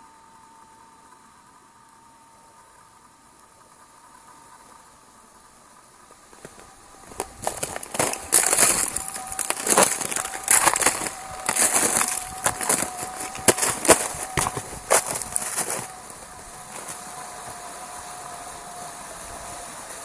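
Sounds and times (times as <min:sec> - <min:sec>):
faint steady hum: 0:00.0 - 0:20.0
footsteps crunching on ice: 0:06.3 - 0:17.6.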